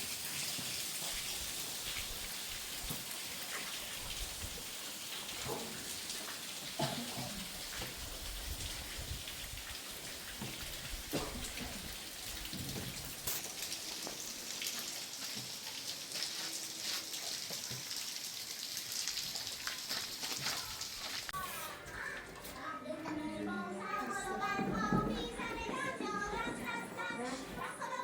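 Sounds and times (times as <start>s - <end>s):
raindrops ticking on surfaces: 0.0s - 21.4s
steady rain: 0.0s - 21.4s.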